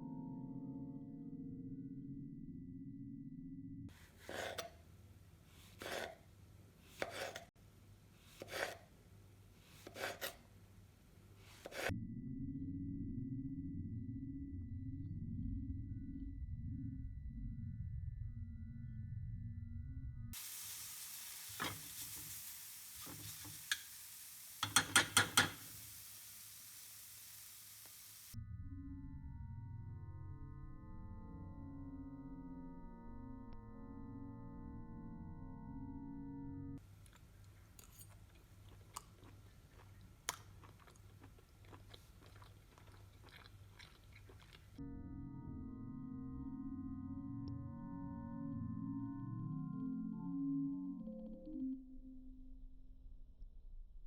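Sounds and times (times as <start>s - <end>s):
low hum: 12.0s - 20.3s, 28.3s - 36.8s
steady hiss: 20.4s - 28.4s.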